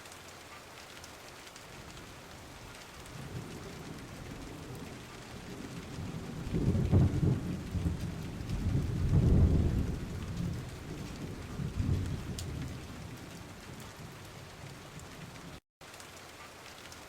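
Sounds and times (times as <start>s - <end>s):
rain falling: 0.0s - 17.0s
thunder rumbling: 2.6s - 15.6s.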